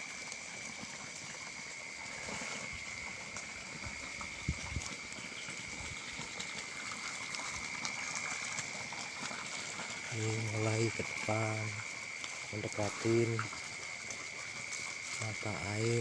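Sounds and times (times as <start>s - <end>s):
water gushing from spring: 0.0s - 16.0s.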